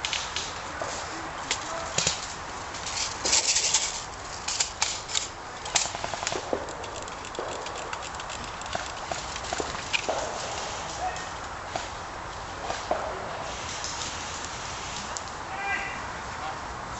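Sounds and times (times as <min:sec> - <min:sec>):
airsoft guns firing: 0:05.7 - 0:10.9.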